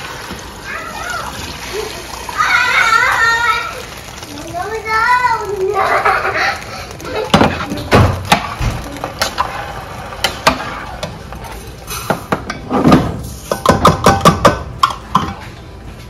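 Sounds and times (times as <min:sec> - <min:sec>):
utensil knocking on cooking pot: 0:13.6 - 0:15.3.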